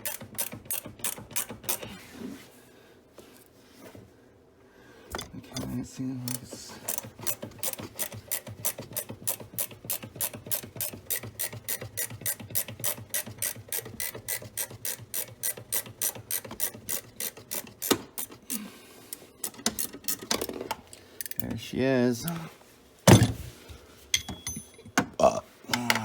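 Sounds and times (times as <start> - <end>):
ratcheting wrench clicking: 0.0 - 1.9, 6.3 - 21.5.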